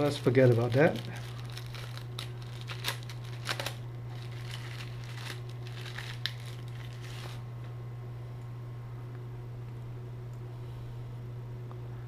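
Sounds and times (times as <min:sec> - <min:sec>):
plastic packaging crinkling: 0:00.0 - 0:07.4.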